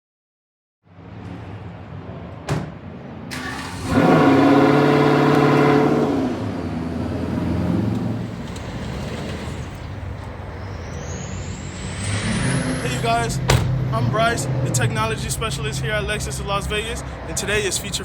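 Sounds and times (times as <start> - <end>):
car engine starting and revving: 3.3 - 17.7.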